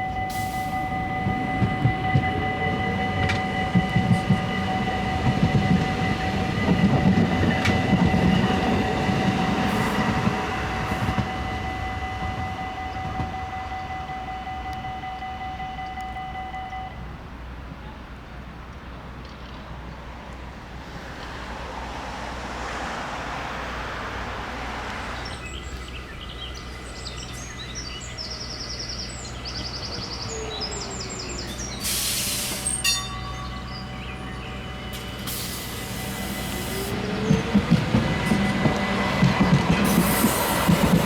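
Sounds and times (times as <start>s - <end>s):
tram wheels rumbling on rails: 0.0s - 41.0s
high chirping: 25.2s - 39.2s.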